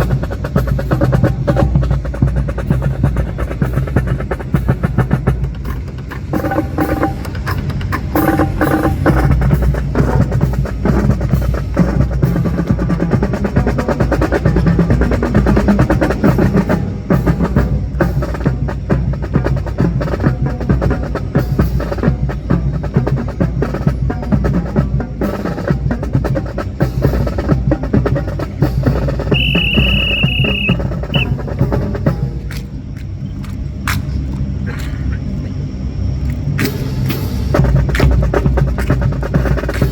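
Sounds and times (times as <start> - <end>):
snare drum rolls: 29.2 - 31.4
high steady tone: 29.4 - 31.3.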